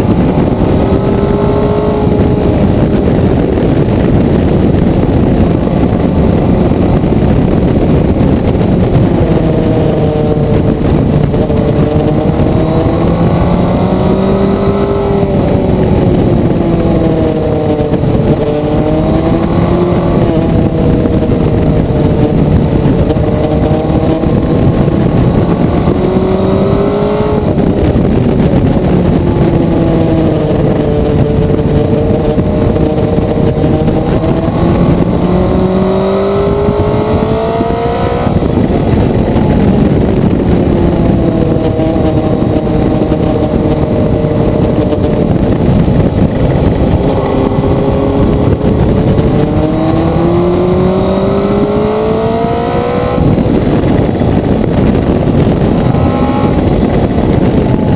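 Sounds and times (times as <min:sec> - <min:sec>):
motorcycle engine revving: 0:00.0 - 0:57.9
wind noise: 0:00.0 - 0:57.9.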